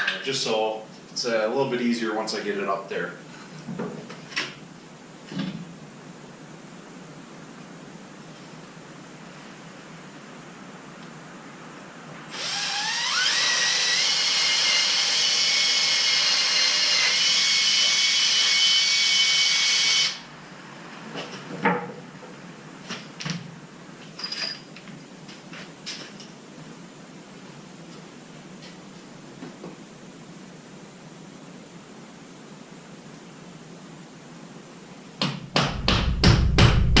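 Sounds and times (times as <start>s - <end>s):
power drill boring into wood: 12.3s - 20.2s.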